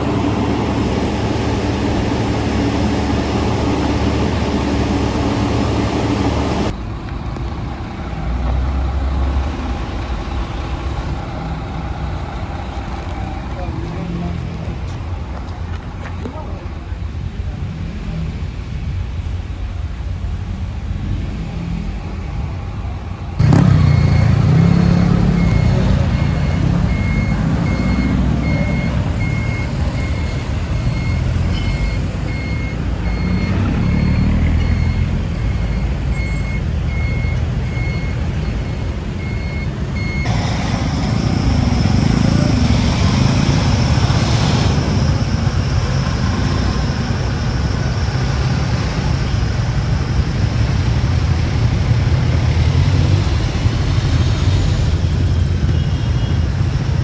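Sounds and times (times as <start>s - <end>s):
diesel engine rumble: 0.0s - 57.0s
reversing alarm beeping: 23.4s - 57.0s.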